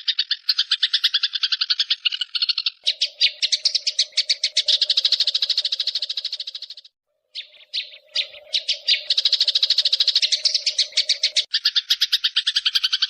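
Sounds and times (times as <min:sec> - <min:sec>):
songbird chirps and trills: 0:00.0 - 0:13.0.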